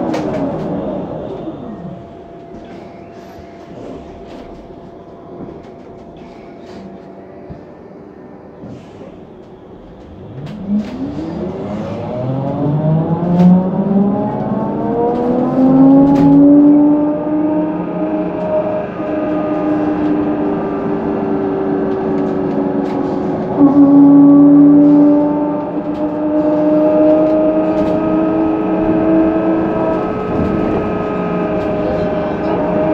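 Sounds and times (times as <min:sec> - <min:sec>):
trolleybus electric drive whining: 0:00.0 - 0:32.9.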